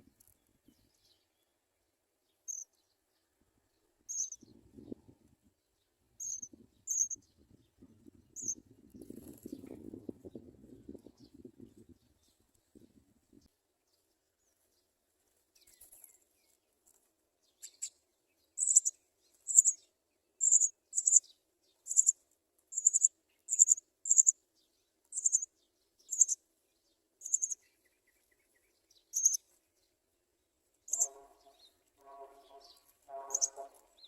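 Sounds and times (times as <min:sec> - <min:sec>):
sparrow chicks begging chirps: 0:02.4 - 0:02.9, 0:04.1 - 0:05.0, 0:06.2 - 0:10.4, 0:18.6 - 0:26.4, 0:27.2 - 0:29.6, 0:30.8 - 0:34.0.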